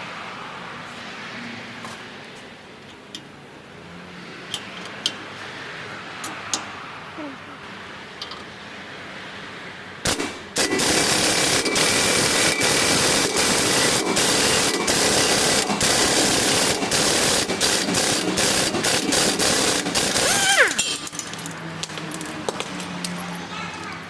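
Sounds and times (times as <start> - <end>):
air-powered tool hissing and rattling: 10.1 - 21.0.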